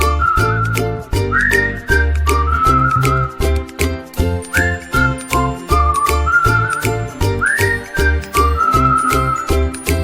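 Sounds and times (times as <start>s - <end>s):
whistled melody: 0.0s - 10.0s
tinkling bell-like notes: 4.2s - 10.0s.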